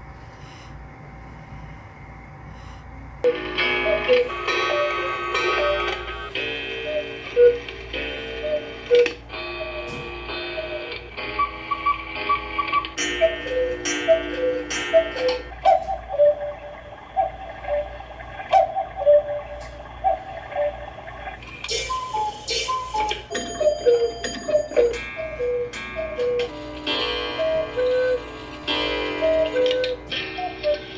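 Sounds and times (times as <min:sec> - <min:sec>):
light background melody: 0:21.6 - 0:30.9.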